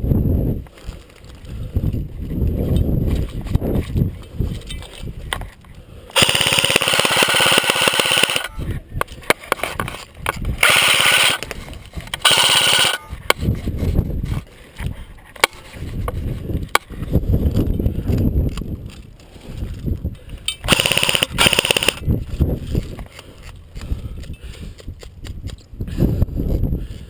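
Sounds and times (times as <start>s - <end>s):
airsoft gun firing bursts: 6.2s - 8.5s, 10.6s - 11.4s, 12.2s - 13.1s, 20.7s - 22.0s.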